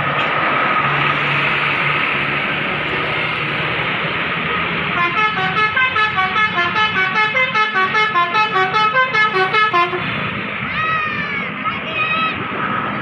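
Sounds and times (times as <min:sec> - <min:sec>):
steady road noise: 0:00.0 - 0:13.0
bus horn playing a fast tune: 0:05.0 - 0:10.2.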